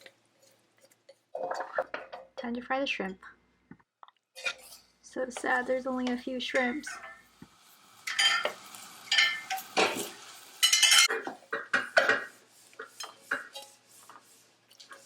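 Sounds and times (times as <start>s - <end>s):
shrimp frying: 4.3s - 15.0s
utensil clanking against pot: 8.1s - 13.8s.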